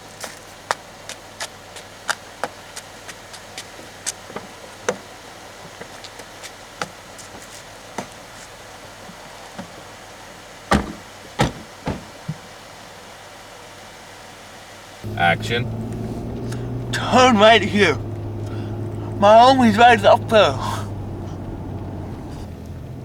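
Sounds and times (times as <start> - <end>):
heavy thumps: 10.7 - 12.2.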